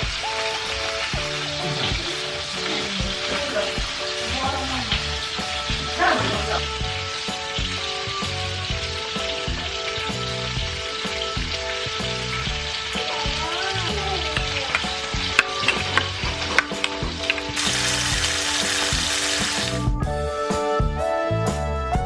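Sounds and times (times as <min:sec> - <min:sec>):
fish sizzling in hot oil: 0:00.0 - 0:19.8
oil popping and crackling: 0:00.0 - 0:19.9
soft background music: 0:00.0 - 0:22.0.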